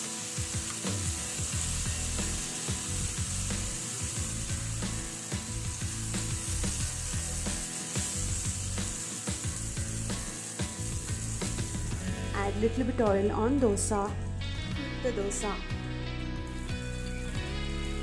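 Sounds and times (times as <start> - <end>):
batter sizzling on a pan: 0.0 - 12.5, 16.4 - 18.0.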